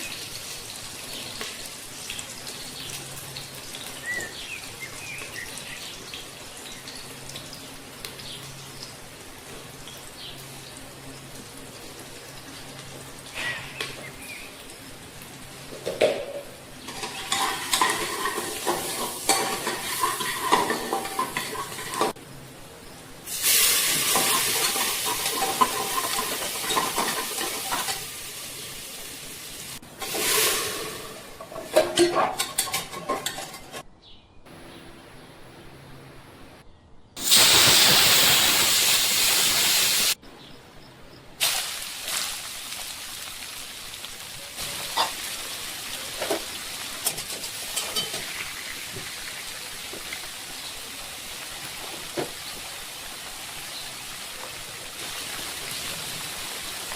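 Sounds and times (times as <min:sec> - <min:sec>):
food sizzling in a pan: 0:00.0 - 0:22.2, 0:23.2 - 0:33.0, 0:37.2 - 0:40.2, 0:41.4 - 0:56.9
utensils clinking against cookware: 0:15.9 - 0:22.2, 0:24.0 - 0:28.1, 0:31.4 - 0:33.8, 0:47.0 - 0:48.4.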